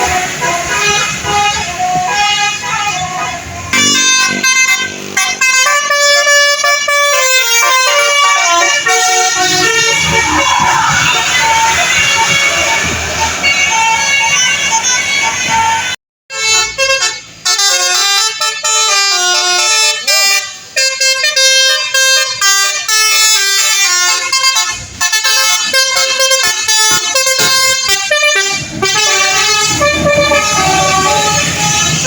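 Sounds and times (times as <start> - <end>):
passing vehicle engine rumble: 0.0 - 16.0, 23.4 - 32.0
multi-tone musical bus horn: 0.0 - 32.0.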